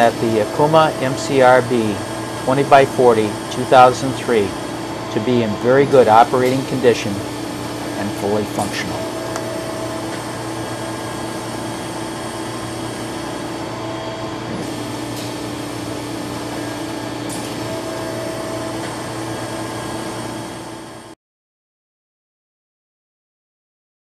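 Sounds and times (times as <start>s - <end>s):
machinery humming: 0.0s - 21.2s.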